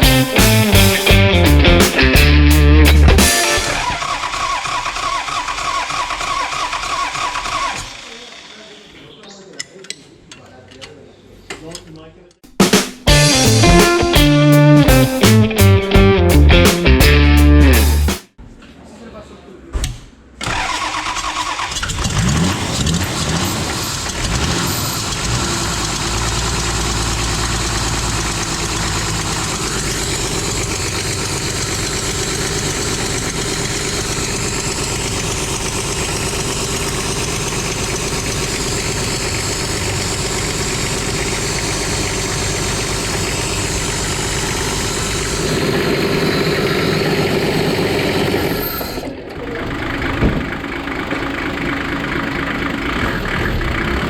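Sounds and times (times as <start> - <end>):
diesel engine running: 0.0 - 6.3, 20.5 - 54.0.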